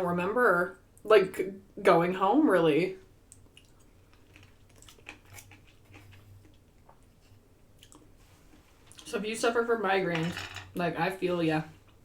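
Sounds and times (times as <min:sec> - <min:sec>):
low steady hum: 0:00.0 - 0:12.0
person eating quietly: 0:03.3 - 0:09.1.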